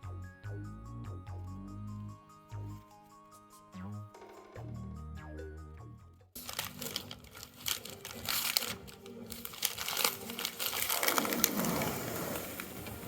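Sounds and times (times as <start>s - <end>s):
plastic film peeling crackling: 6.4s - 13.0s.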